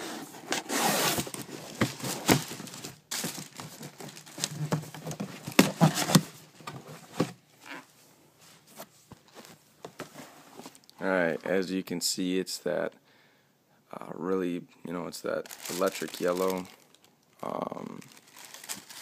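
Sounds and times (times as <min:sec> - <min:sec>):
paper crinkling: 0:15.5 - 0:17.0, 0:18.0 - 0:19.0.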